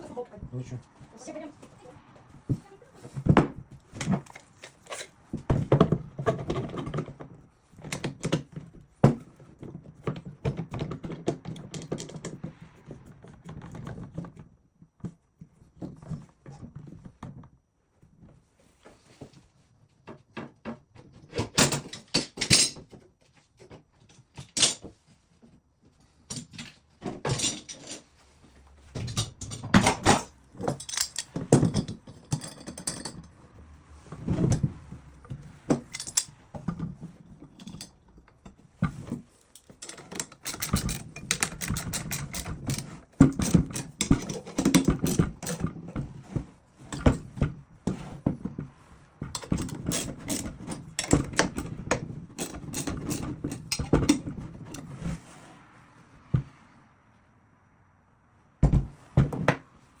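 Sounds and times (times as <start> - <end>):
workshop equipment clicking and clanking: 28.9 - 33.4, 34.2 - 48.1, 49.2 - 55.0.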